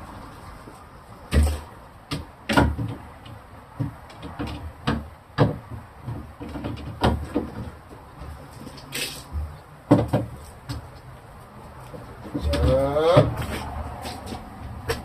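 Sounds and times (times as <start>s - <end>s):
refrigerator shelves and drawers knocking: 1.3s - 7.8s, 9.3s - 10.8s.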